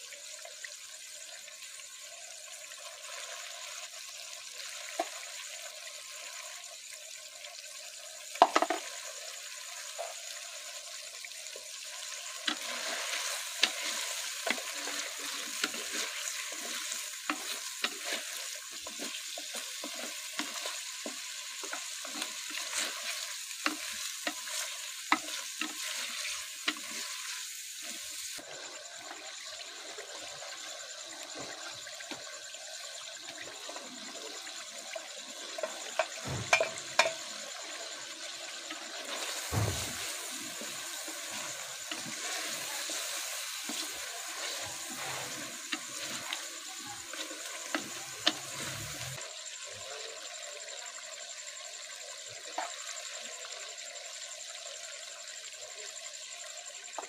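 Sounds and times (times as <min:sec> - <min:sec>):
food sizzling in a pan: 0:00.0 - 0:57.0
spoon scraping a pan: 0:12.5 - 0:27.4, 0:35.6 - 0:37.2.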